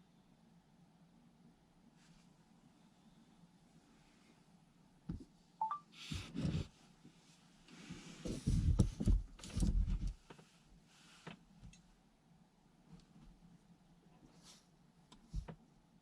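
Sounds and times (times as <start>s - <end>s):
click: 11.7s - 11.9s.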